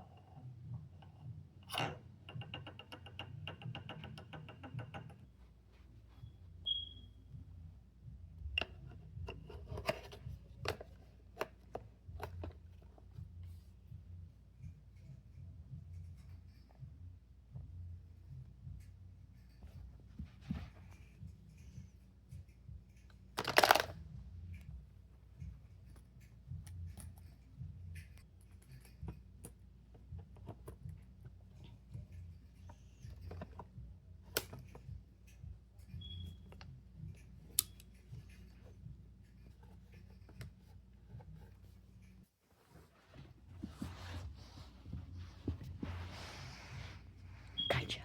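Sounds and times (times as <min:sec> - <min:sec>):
plastic toys clattering: 0:23.3 - 0:24.0
plastic pieces clicking: 0:23.4 - 0:24.0.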